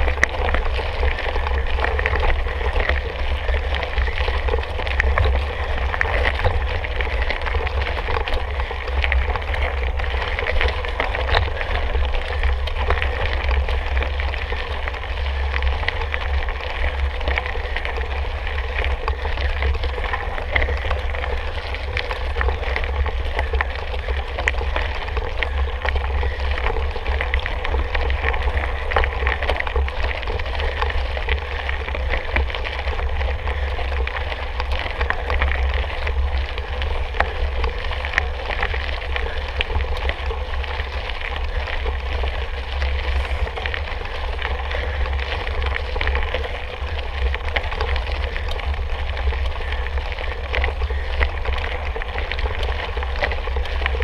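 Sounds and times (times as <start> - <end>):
bike tyres rattling on rough trail: 0.0 - 54.0
wind rumbling on microphone: 0.0 - 54.0.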